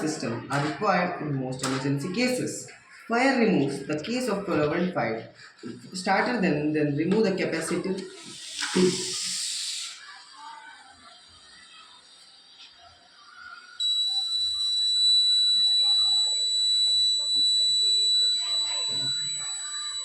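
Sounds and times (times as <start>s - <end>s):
fire alarm buzzer tone: 13.8s - 20.0s.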